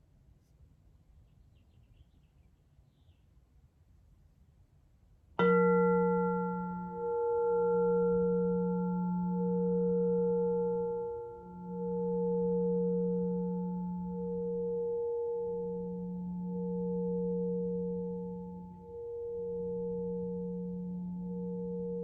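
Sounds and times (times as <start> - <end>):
singing bowl ringing: 5.4 - 22.0.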